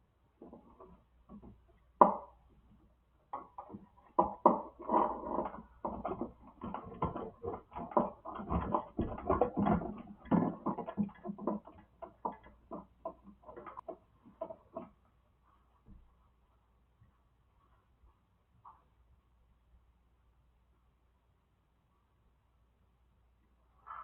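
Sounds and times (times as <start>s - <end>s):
wires and plastic parts rattling: 0.4s - 14.9s.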